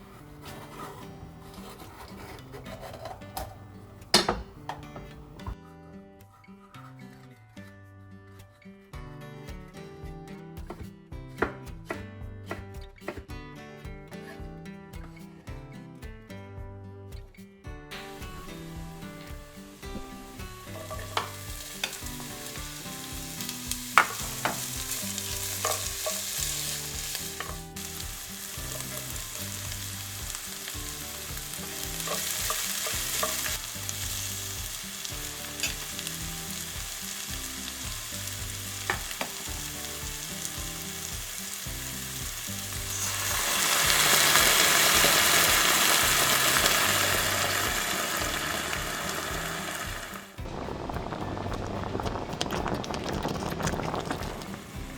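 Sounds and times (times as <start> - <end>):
food sizzling in a pan: 18.1 - 54.9.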